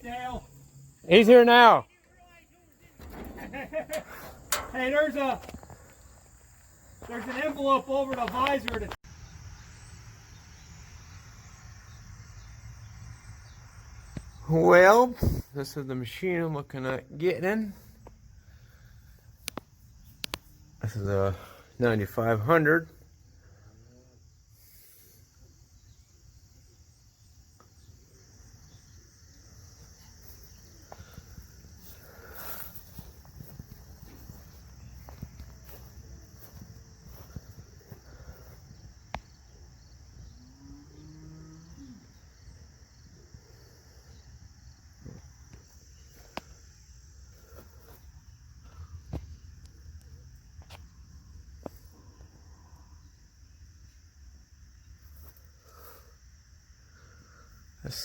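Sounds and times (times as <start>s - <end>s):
insects chirring: 0.0s - 58.0s
low outdoor rumble: 2.0s - 7.2s
sharp clicks and knocks: 3.0s - 6.0s.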